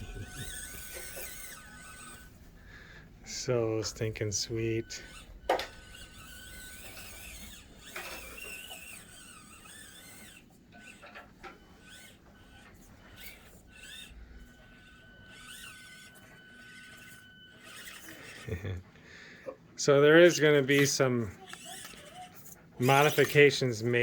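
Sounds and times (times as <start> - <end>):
wavering high squeal: 0.0 - 18.6
small electric motor whine: 0.0 - 18.9, 20.1 - 24.0.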